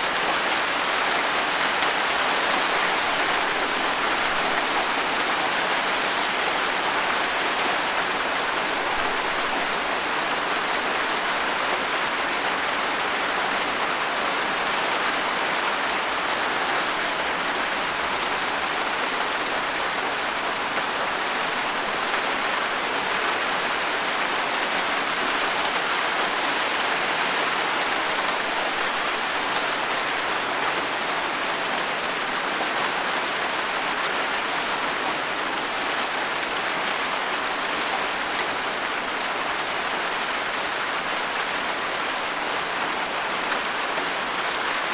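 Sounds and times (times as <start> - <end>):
steady rain falling: 0.0 - 44.9.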